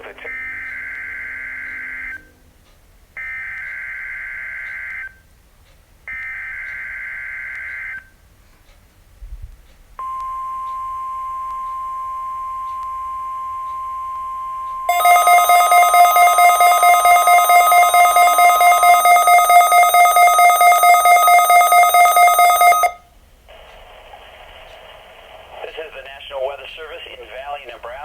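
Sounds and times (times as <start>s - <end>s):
rapidly pulsing electronic alarm: 0.3s - 2.2s, 10.0s - 23.0s
steady pure alarm tone: 0.3s - 2.3s, 10.0s - 23.0s.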